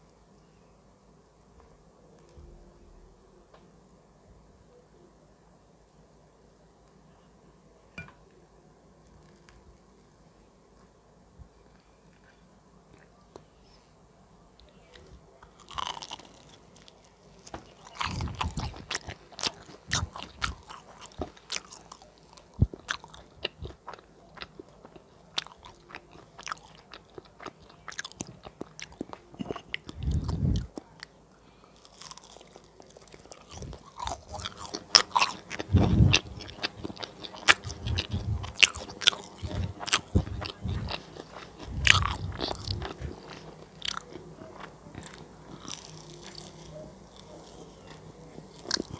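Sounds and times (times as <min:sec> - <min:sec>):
crunchy chewing of fried food: 0:14.6 - 0:48.9.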